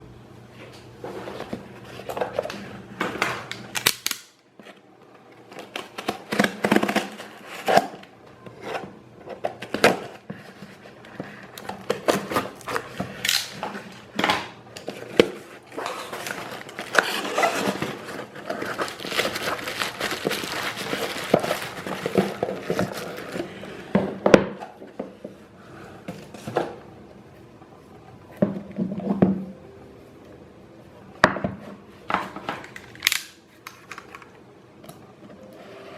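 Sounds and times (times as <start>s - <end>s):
packaging crinkling rustle: 14.8s - 23.6s.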